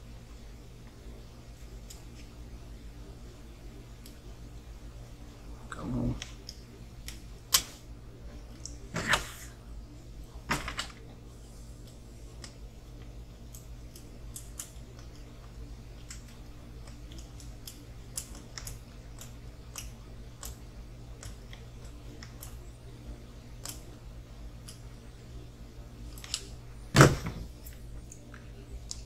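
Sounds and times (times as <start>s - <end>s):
low steady hum: 0.0s - 29.0s
faint clicks of small parts: 6.1s - 7.7s, 11.8s - 22.6s, 23.5s - 24.0s, 24.6s - 25.0s, 26.0s - 26.6s, 27.6s - 29.0s.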